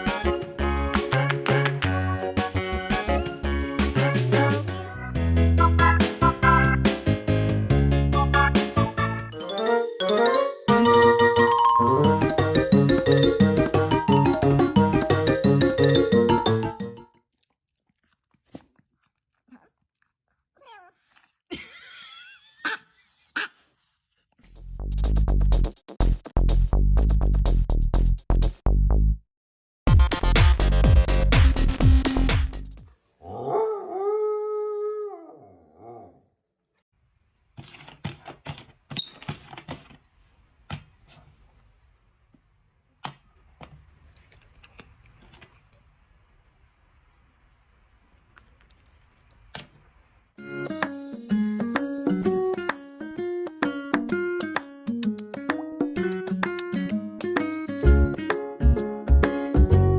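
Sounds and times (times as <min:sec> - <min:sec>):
background music: 0:00.0 - 0:17.0, 0:50.4 - 0:59.9
dog howling: 0:33.3 - 0:36.2.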